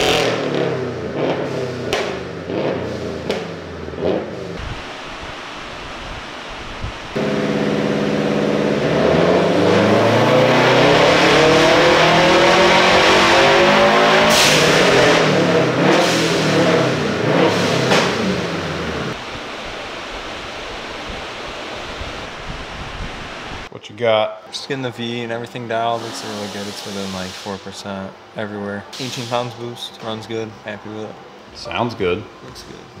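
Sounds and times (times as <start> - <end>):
turbocharged engine revving: 0.0 - 4.6, 7.2 - 19.2
blow-off valve venting: 25.8 - 28.1, 28.9 - 29.8.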